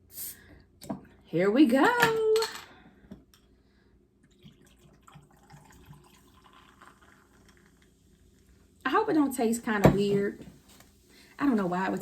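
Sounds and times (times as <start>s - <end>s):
drink poured into glass of ice: 4.3s - 7.9s.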